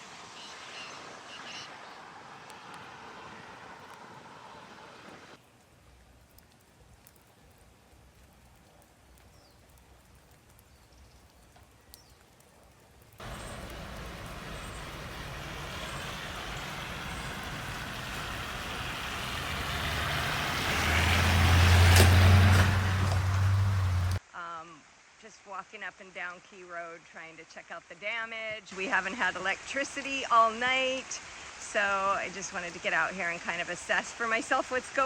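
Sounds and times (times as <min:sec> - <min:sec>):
vehicle passing close: 0:13.2 - 0:24.2.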